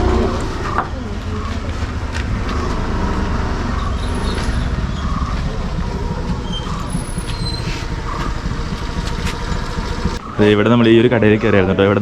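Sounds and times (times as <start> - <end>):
vehicle engine rumble: 0.0 - 12.0
rattling and clattering: 0.4 - 10.2.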